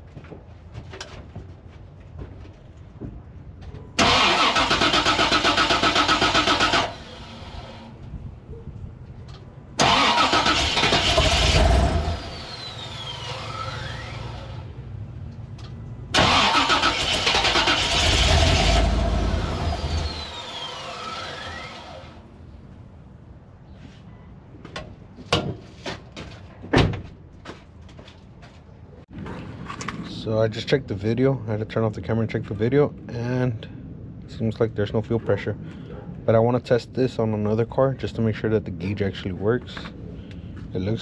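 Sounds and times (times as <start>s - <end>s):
engine cranking and firing: 4.0s - 7.9s, 9.8s - 14.7s, 15.6s - 22.2s.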